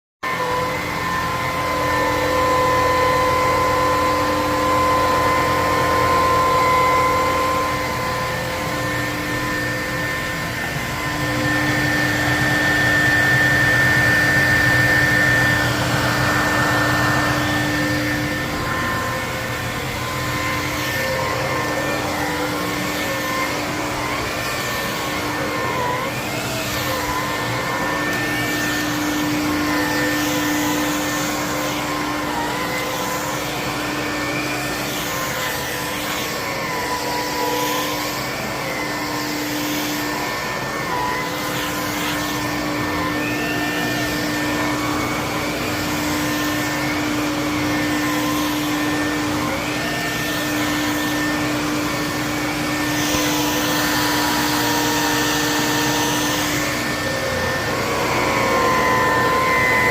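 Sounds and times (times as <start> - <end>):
vacuum cleaner running: 0.2 - 59.9.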